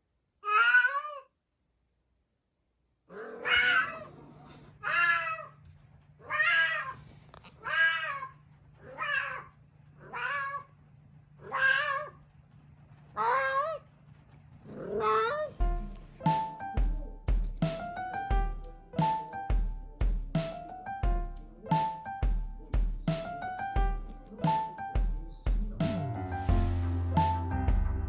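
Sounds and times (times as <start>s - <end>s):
faint low hum: 0.0s - 20.4s
cat meowing: 0.4s - 1.3s, 3.1s - 5.6s, 6.2s - 10.8s, 11.4s - 12.2s, 13.2s - 13.8s.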